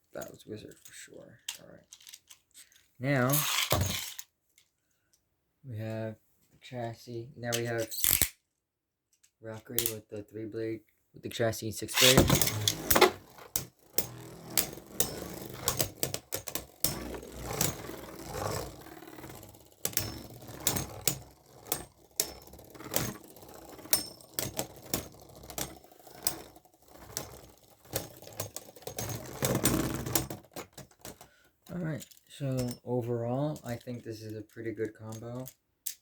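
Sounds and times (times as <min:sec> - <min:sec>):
spinning tops clacking and scraping: 0:00.8 - 0:04.2, 0:11.9 - 0:36.0.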